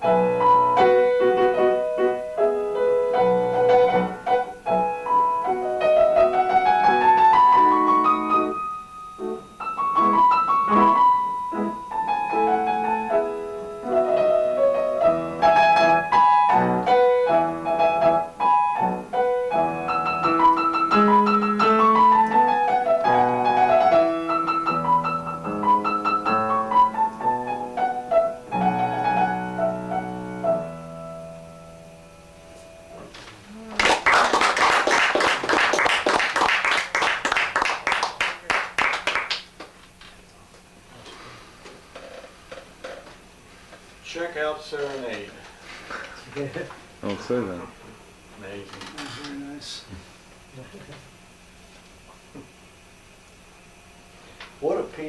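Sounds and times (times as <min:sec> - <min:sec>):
classical piano piece: 0:00.0 - 0:33.1.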